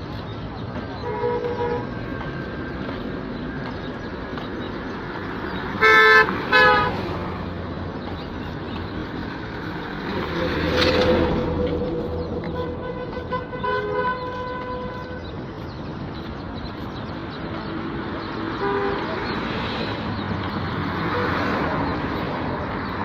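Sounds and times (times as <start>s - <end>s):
road traffic: 0.0s - 23.0s
vehicle horn honking: 1.0s - 1.9s, 5.8s - 7.0s, 12.6s - 15.2s, 18.6s - 19.1s
vehicle passing close: 5.2s - 12.6s.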